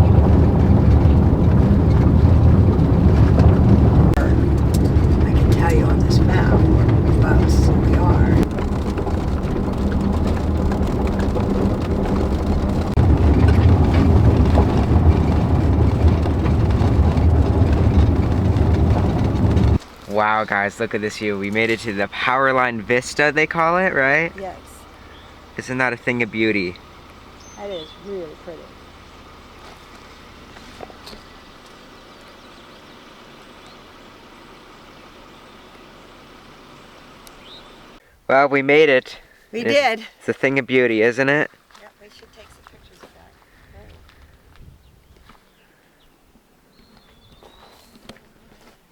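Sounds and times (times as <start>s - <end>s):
car road and engine rumble: 0.0s - 38.2s
low vehicle hum: 0.0s - 38.2s.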